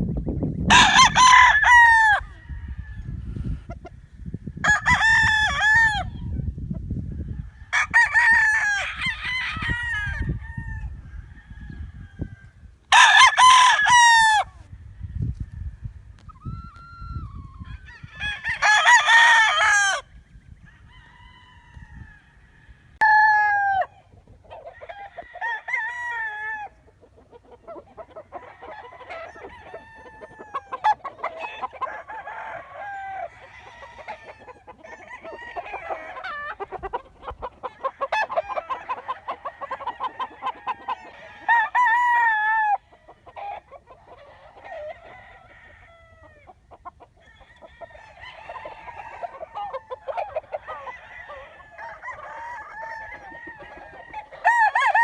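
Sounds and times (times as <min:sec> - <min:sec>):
roosters crowing: 0:00.6 - 0:03.7, 0:04.6 - 0:06.5, 0:07.1 - 0:55.0
chickens clucking: 0:23.9 - 0:25.4, 0:26.5 - 0:55.0.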